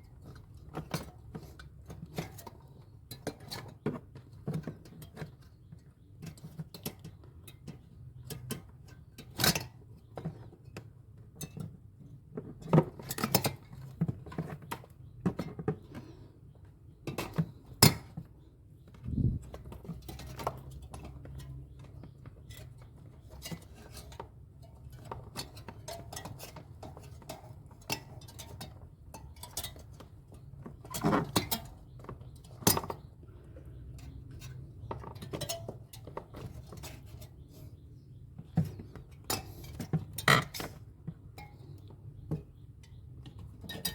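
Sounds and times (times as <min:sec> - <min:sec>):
steady low hum: 0:19.0 - 0:19.5.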